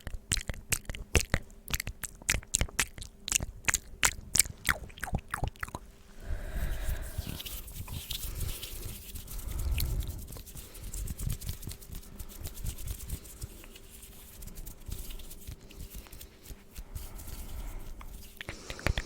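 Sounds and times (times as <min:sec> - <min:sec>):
wet mouth clicks and smacks: 0:00.0 - 0:05.8, 0:15.4 - 0:19.0.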